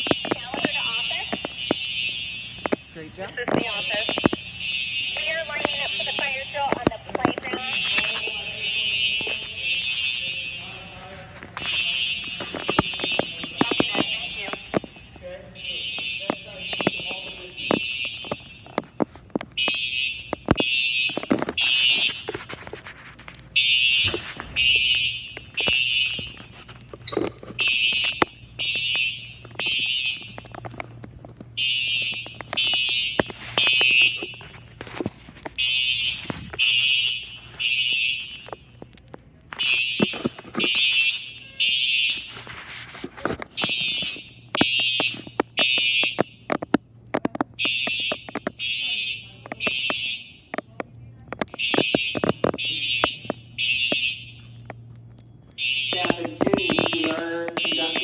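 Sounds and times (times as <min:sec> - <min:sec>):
fire alarm beeping: 0:00.0 - 0:58.0
knocks and clicks: 0:15.9 - 0:41.3.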